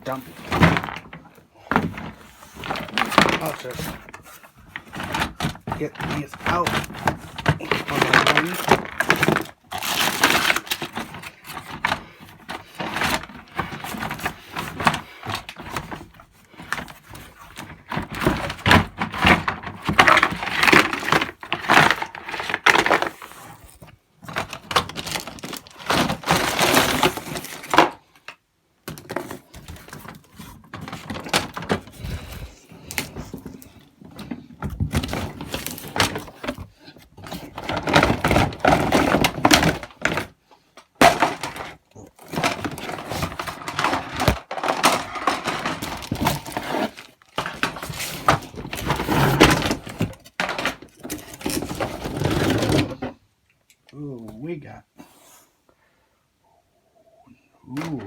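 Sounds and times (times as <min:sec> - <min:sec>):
plastic toy pieces clattering: 0:00.1 - 0:28.3, 0:37.2 - 0:53.0.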